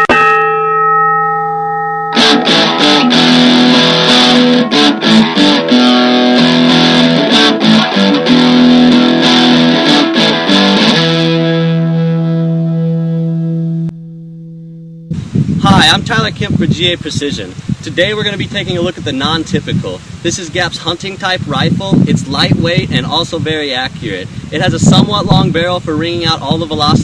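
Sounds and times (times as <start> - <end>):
electric guitar strumming: 0.0 - 15.3.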